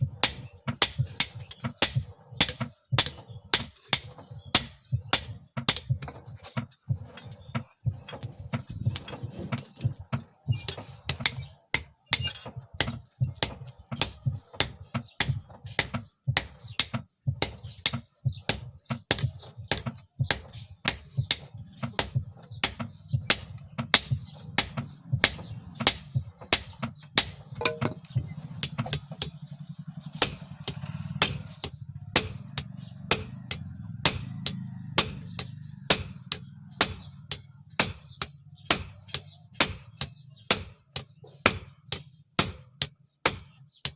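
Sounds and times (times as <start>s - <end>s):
hammer striking steel on anvil: 27.2s - 28.7s.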